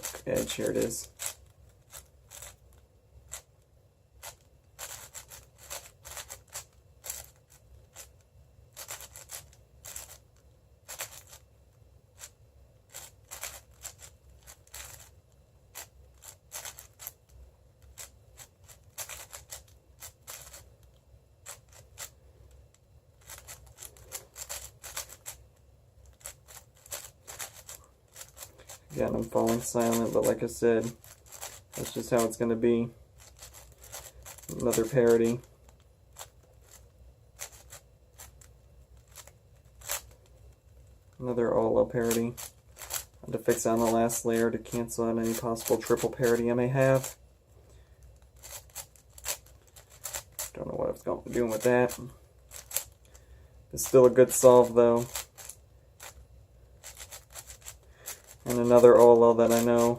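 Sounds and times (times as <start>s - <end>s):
plastic puzzle cube layers clicking: 4.2s - 8.1s, 8.8s - 10.2s, 10.9s - 11.4s, 12.9s - 15.1s, 15.8s - 17.2s, 17.8s - 20.6s, 23.2s - 25.4s, 26.0s - 32.3s, 33.2s - 34.9s, 35.7s - 38.4s, 42.4s - 44.2s, 48.4s - 50.5s, 51.5s - 53.2s, 54.3s - 56.2s, 56.8s - 59.9s.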